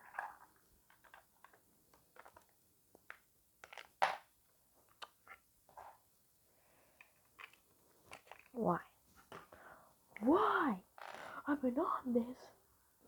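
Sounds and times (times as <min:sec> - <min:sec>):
plastic building pieces clicking: 0:00.0 - 0:04.2.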